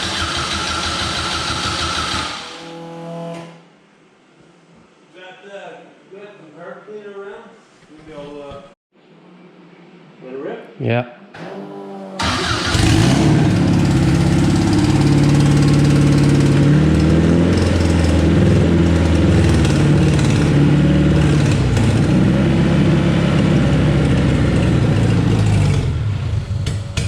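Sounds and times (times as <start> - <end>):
car engine revving: 0.0 - 3.6, 11.4 - 27.0.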